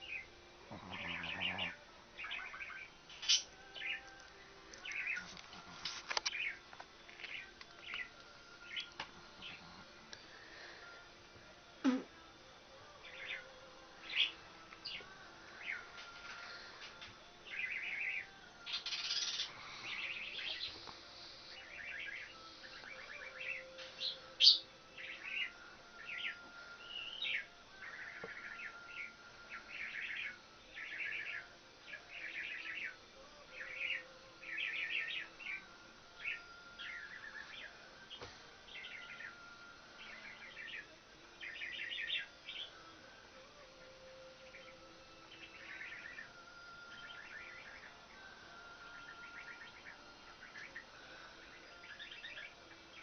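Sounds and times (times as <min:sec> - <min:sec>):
small birds chirping: 0:00.0 - 0:10.9, 0:17.5 - 0:35.6, 0:44.4 - 0:48.0.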